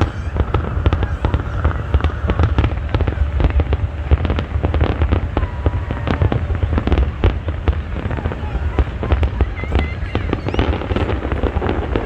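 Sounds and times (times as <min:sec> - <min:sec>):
fireworks bangs and crackles: 0:00.0 - 0:12.0
whistling glide: 0:09.5 - 0:12.0.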